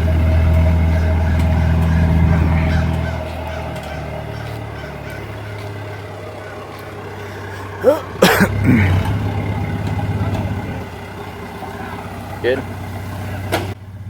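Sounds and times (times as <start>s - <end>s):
forklift engine humming: 0.0s - 14.0s
short honking calls: 0.1s - 11.0s.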